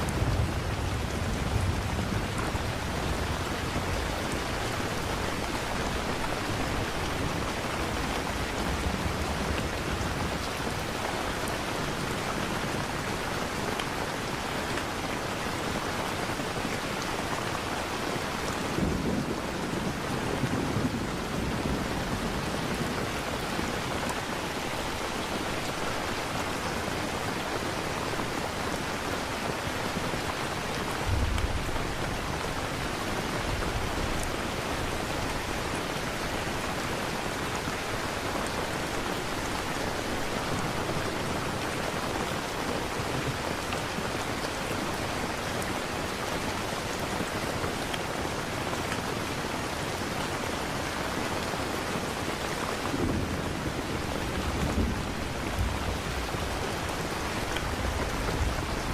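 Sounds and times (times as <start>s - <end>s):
thunder rumbling: 0.0s - 10.8s, 52.8s - 58.9s
steady rain: 0.0s - 58.9s.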